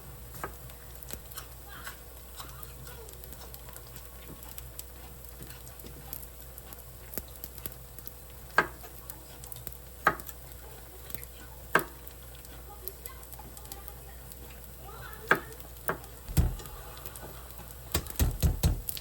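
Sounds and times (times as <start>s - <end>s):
faint sizzle: 0.0s - 19.0s
utensil clicking in a pan: 0.3s - 19.0s
sharp knocks: 16.3s - 16.8s, 17.9s - 18.9s.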